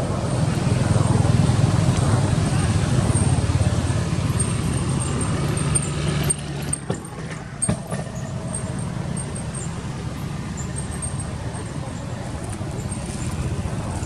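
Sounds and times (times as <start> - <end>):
vehicle engine rumble: 0.0 - 14.0.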